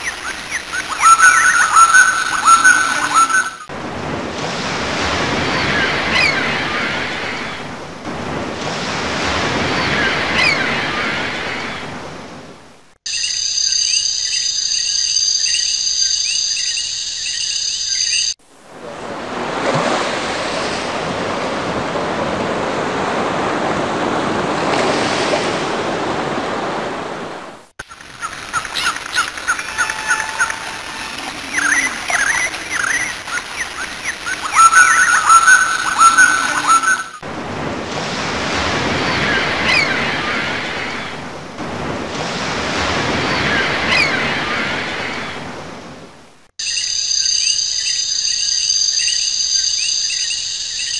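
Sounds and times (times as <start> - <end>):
birds chirping: 0.0 - 3.7, 27.9 - 37.2
surf: 0.0 - 12.8, 18.4 - 46.3
high trilling: 29.4 - 33.2.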